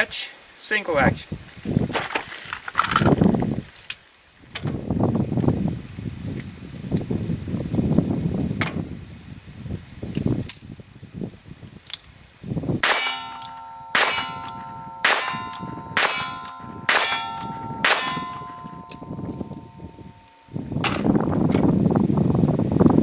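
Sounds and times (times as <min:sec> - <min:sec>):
ringing metallic clang: 0:12.8 - 0:21.1.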